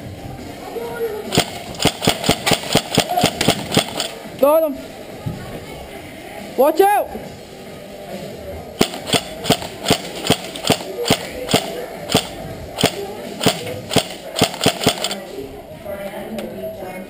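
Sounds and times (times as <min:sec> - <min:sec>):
airsoft rifle shots: 0:01.3 - 0:04.2, 0:08.8 - 0:15.2.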